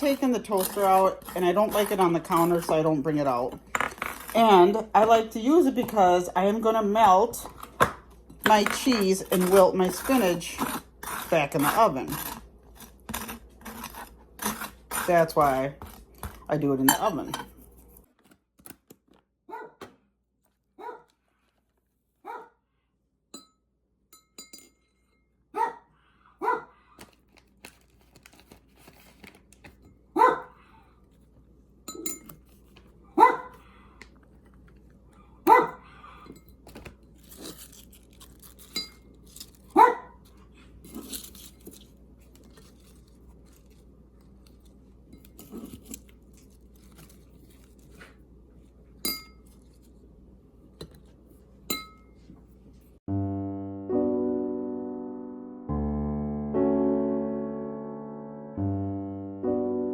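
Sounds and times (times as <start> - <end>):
small dog yelping: 19.5 - 19.8, 20.8 - 21.1, 22.3 - 22.5, 25.6 - 25.8, 26.4 - 26.9, 30.2 - 30.6, 33.2 - 33.6, 35.5 - 36.2, 39.8 - 40.2.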